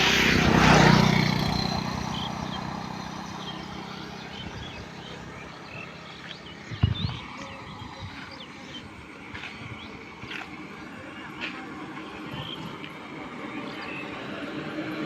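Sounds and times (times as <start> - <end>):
motor vehicle passing: 0.0 - 11.3
small birds chirping: 0.8 - 10.8.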